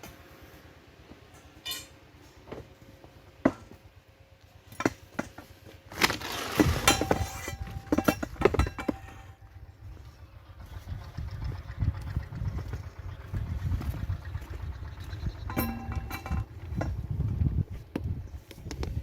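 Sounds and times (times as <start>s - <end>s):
metal parts clinking and knocking: 1.6s - 2.0s, 6.6s - 9.6s, 15.5s - 16.9s
short metallic ring: 1.6s - 2.0s, 6.8s - 9.6s, 15.5s - 16.5s.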